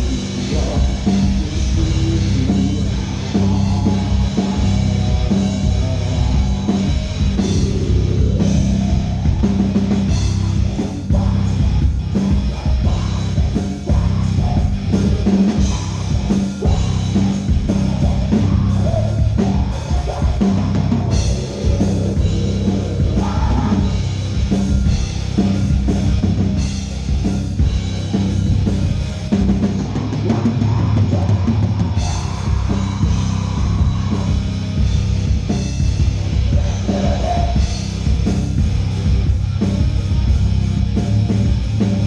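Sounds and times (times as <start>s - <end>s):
drum kit beat: 0.0s - 42.0s
rock band playing live: 0.0s - 42.0s.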